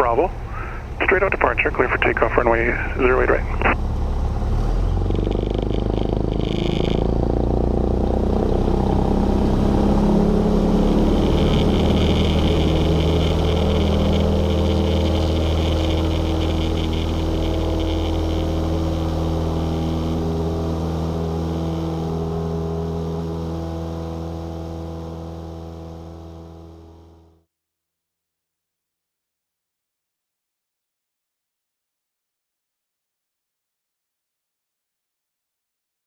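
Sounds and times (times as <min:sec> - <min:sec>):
light aircraft engine and propeller: 0:00.0 - 0:27.4.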